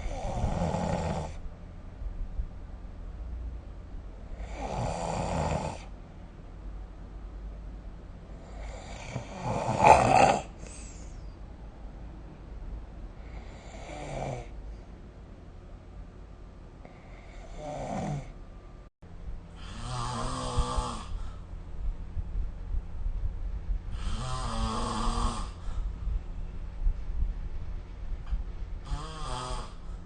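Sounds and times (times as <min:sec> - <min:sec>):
person snoring: 0:00.0 - 0:01.4, 0:04.4 - 0:05.9, 0:08.4 - 0:10.9, 0:13.2 - 0:14.6, 0:16.9 - 0:18.4, 0:19.6 - 0:21.4, 0:23.9 - 0:25.8, 0:28.8 - 0:29.9.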